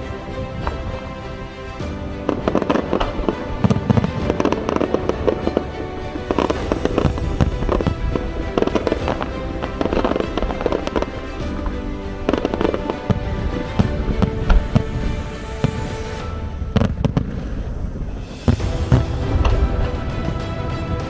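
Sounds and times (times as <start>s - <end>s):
music playing: 0.0s - 21.0s.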